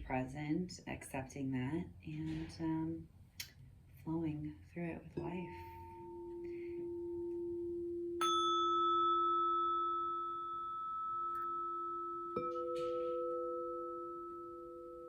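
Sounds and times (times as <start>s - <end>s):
tuning fork struck clang: 5.2s - 15.0s
tuning forks ringing: 5.2s - 15.0s.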